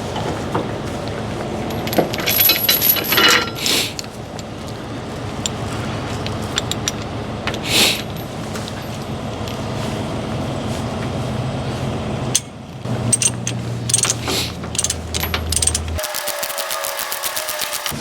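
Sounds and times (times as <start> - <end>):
chain links clinking: 1.6 - 4.8, 5.4 - 9.8, 12.3 - 16.1.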